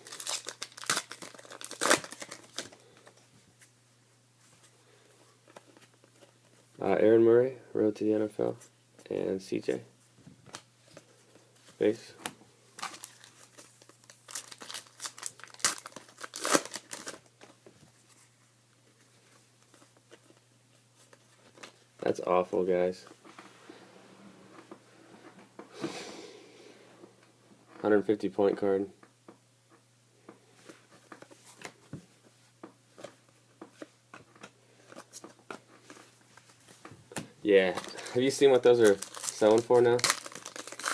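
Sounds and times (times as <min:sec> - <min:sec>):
foil wrapper tearing and crinkling: 0:00.0 - 0:02.8, 0:12.8 - 0:17.3, 0:37.7 - 0:40.9.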